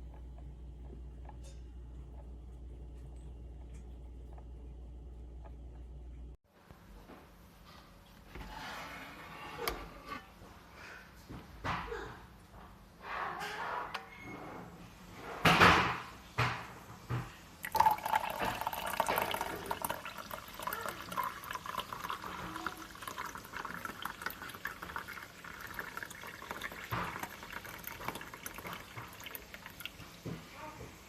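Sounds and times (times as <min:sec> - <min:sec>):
water pouring into reservoir: 0:17.6 - 0:30.1.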